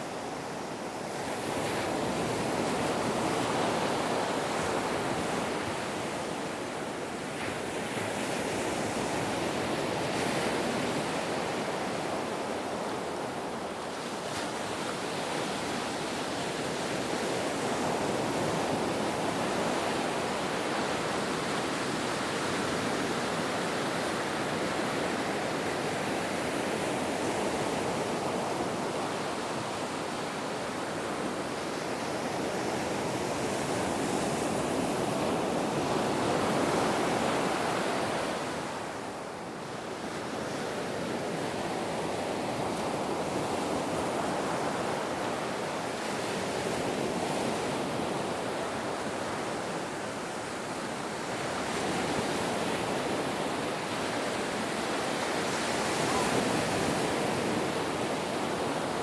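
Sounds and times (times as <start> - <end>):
ocean waves breaking: 51.3 - 59.0.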